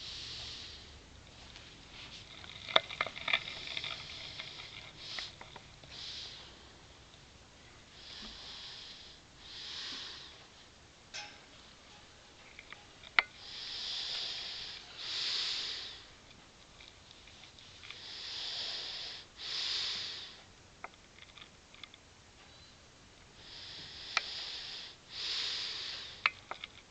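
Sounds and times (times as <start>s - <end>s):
boy snoring: 8.0s - 10.4s, 13.4s - 16.1s, 18.0s - 20.4s, 23.4s - 26.2s.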